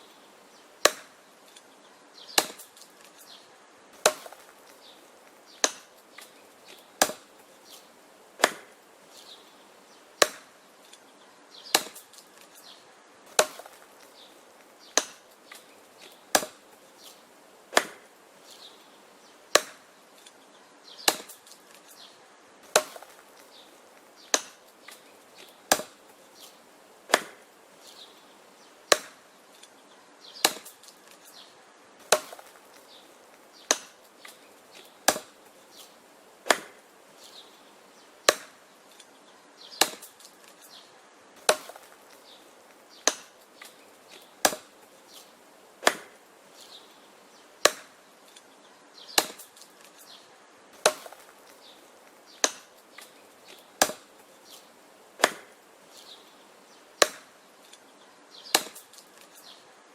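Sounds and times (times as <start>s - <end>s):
axe chopping wood: 0.8s - 1.6s, 2.3s - 3.1s, 4.0s - 7.4s, 8.4s - 8.8s, 10.2s - 11.0s, 11.7s - 12.5s, 13.3s - 18.1s, 19.5s - 19.9s, 21.0s - 21.9s, 22.6s - 27.5s, 28.9s - 29.6s, 30.4s - 31.4s, 32.0s - 37.4s, 38.2s - 39.0s, 39.7s - 40.7s, 41.4s - 45.2s, 45.8s - 46.2s, 47.6s - 48.4s, 49.1s - 50.0s, 50.8s - 54.2s, 55.2s - 56.1s, 57.0s - 57.4s, 58.5s - 59.4s.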